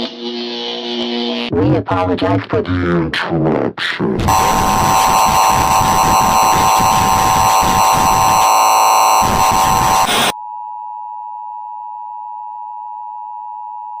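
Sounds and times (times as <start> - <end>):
harsh static with buzzing tone: 0.0 - 1.6, 4.2 - 10.4
steady electronic sine tone: 4.2 - 14.0.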